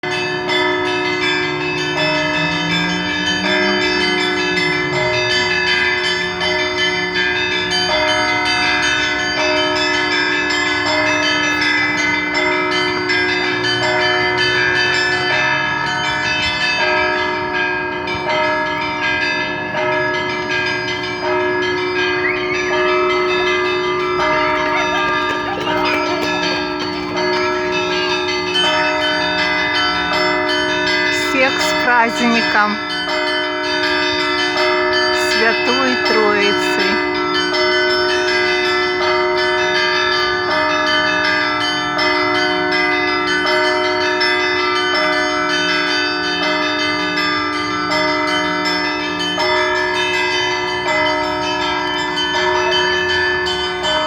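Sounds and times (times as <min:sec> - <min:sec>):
large bells ringing: 0:00.0 - 0:54.0
small bells ringing quickly: 0:18.4 - 0:54.0.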